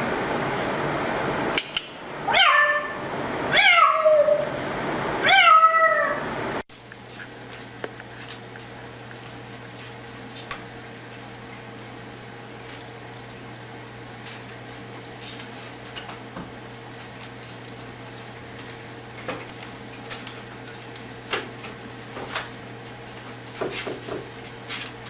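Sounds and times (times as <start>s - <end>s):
cat meowing: 2.3s - 4.5s, 5.2s - 6.2s.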